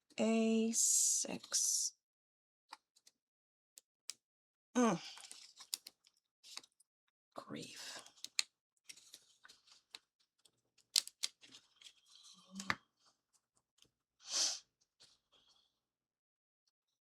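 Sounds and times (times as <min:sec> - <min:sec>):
small plastic parts clicking: 0:05.2 - 0:06.8, 0:08.1 - 0:12.0.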